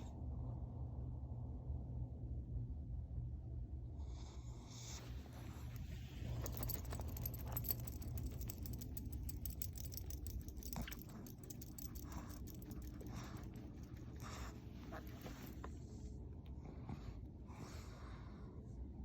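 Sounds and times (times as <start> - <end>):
dog breathing noisily: 4.2 - 18.7.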